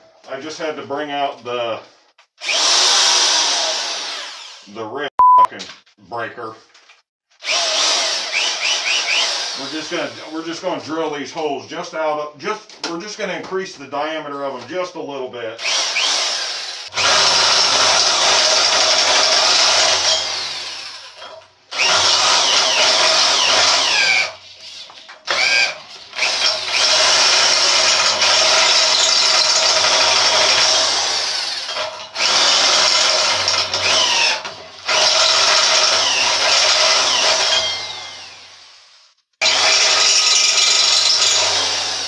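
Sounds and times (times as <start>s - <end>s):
power drill with step bit: 2.4s - 4.7s, 7.4s - 10.2s, 15.6s - 42.0s
drill bit squealing: 7.4s - 10.0s, 21.8s - 38.4s, 39.4s - 42.0s.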